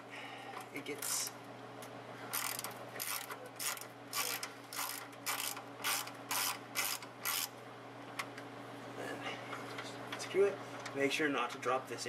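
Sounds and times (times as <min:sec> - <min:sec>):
socket wrench ratchet clicking: 0:02.4 - 0:07.5.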